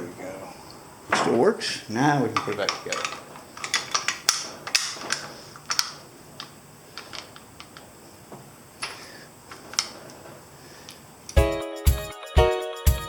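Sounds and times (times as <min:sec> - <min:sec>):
small hard parts clicking: 0:02.3 - 0:07.9, 0:08.8 - 0:11.4.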